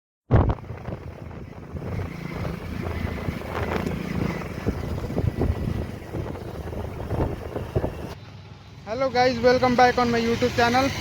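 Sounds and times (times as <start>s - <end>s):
wind buffeting microphone: 0.3s - 8.2s
motor vehicle running: 0.3s - 11.0s.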